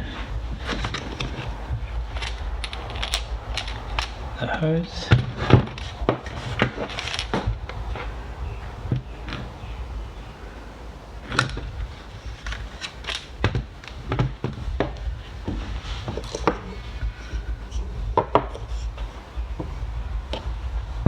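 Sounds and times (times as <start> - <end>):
hard plastic knocking and rubbing: 13.4 - 20.5.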